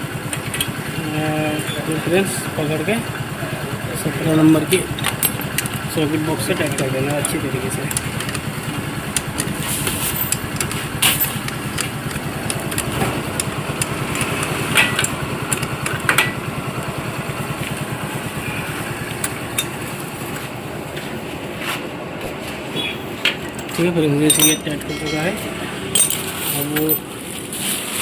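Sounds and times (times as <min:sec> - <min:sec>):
small engine running: 0:00.0 - 0:21.4
socket wrench metal clinks: 0:05.0 - 0:05.8, 0:24.2 - 0:25.4, 0:26.0 - 0:27.1.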